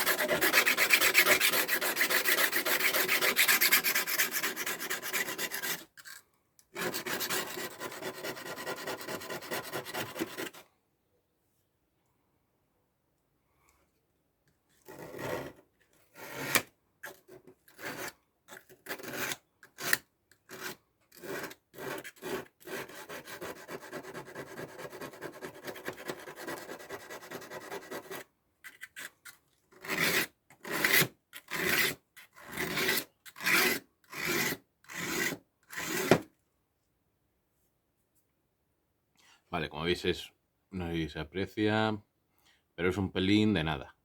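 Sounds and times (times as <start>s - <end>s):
metal file rasping on sharpening stone: 0.0s - 6.2s, 6.8s - 10.6s, 17.7s - 36.2s.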